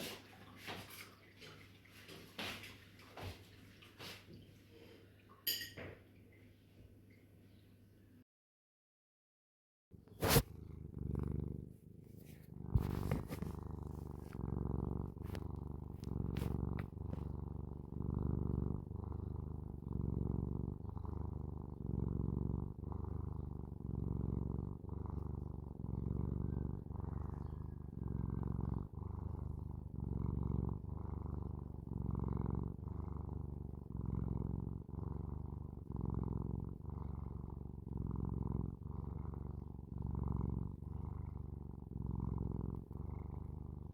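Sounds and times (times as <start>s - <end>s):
cat purring: 9.9s - 43.9s.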